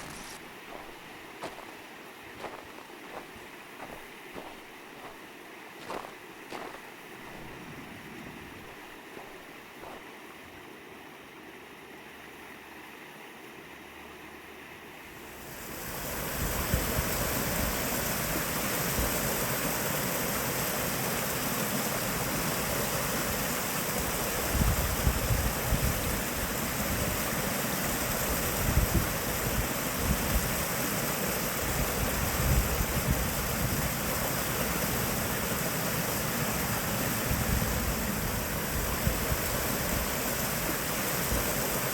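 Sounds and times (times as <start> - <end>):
waterfall rushing: 15.2 - 41.9.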